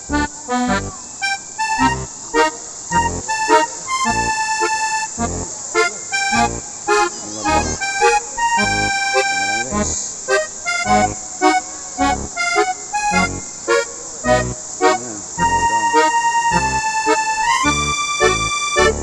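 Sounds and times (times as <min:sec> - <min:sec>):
accordion-like melody: 0:00.0 - 0:19.0
music with steady beat: 0:14.3 - 0:19.0.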